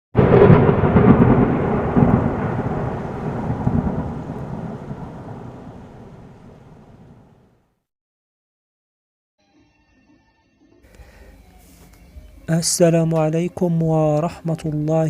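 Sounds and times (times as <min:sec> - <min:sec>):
thunder rumble: 0:00.2 - 0:07.6.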